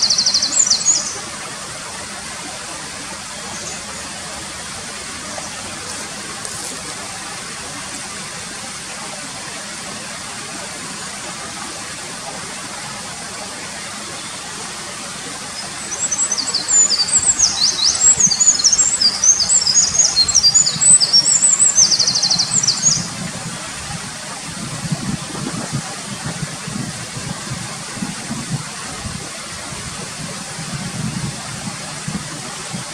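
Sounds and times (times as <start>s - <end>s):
wren singing: 0.0s - 1.2s, 15.6s - 23.1s
mountain stream rushing: 0.0s - 32.9s.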